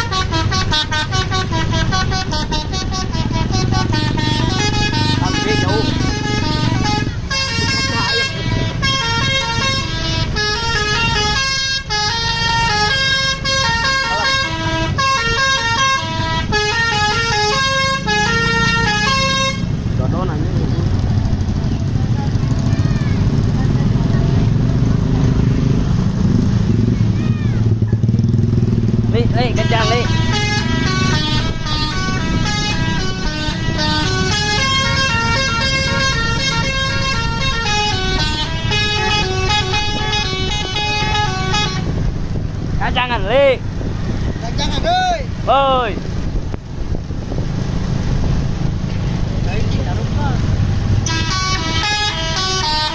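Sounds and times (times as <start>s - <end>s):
bus horn melody: 0.0s - 19.8s, 29.4s - 42.2s, 51.0s - 52.9s
low engine rumble: 0.0s - 52.9s.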